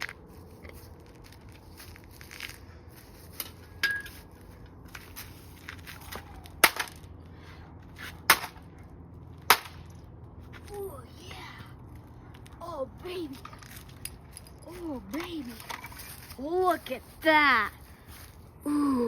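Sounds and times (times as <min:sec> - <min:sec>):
small cracks and clinks: 0:13.4 - 0:16.4.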